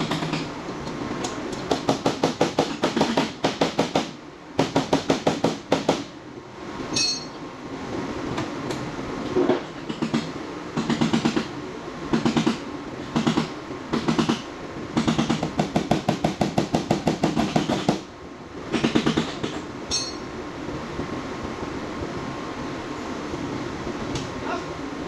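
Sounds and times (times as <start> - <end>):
hammer tapping on sheet metal: 15.0 - 18.0.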